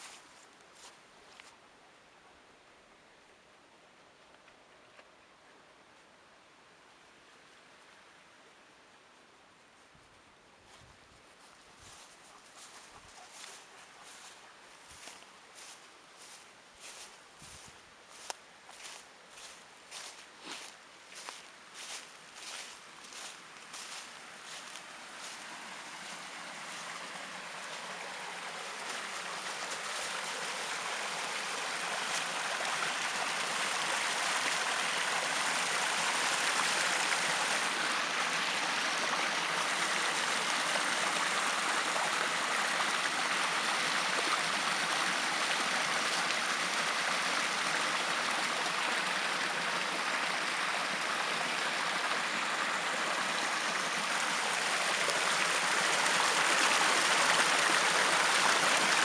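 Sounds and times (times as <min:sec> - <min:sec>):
stream water babbling: 0:00.0 - 0:09.6, 0:11.4 - 0:59.0.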